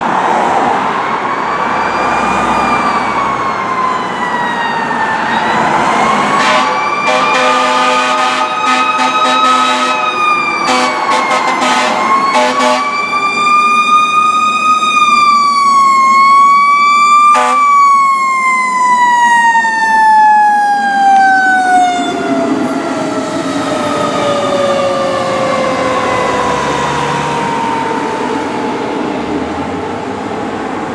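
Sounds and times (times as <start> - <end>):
fire engine siren wailing: 0.0 - 30.9
horn blasts: 6.4 - 12.9, 17.3 - 17.7.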